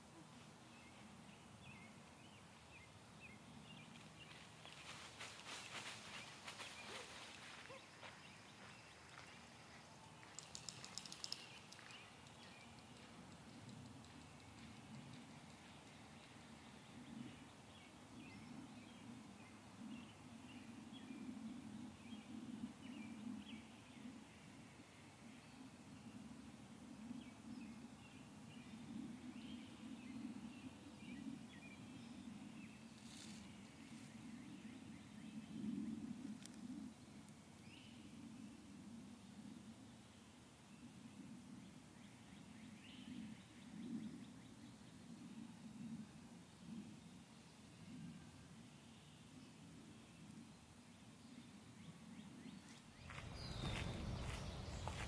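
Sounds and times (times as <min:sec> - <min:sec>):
faint sharp clicks: 0:10.2 - 0:15.6
steady low rumble: 0:53.0 - 0:55.0.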